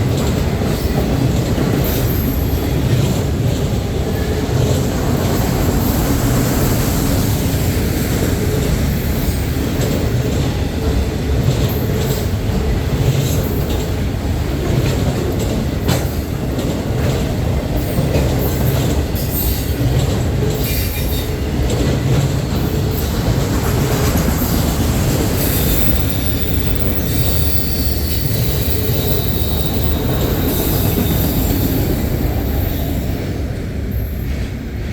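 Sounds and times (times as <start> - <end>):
wheels clicking on rails: 0.0 - 34.6
train wheels rumbling on track: 0.0 - 34.9
high wheel squeal: 25.4 - 33.0.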